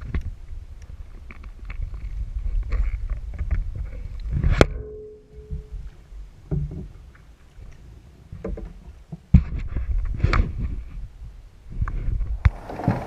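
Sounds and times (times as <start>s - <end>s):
low rumble: 0.0s - 12.6s
knocks and thumps on kayak: 6.5s - 7.1s, 12.0s - 13.0s.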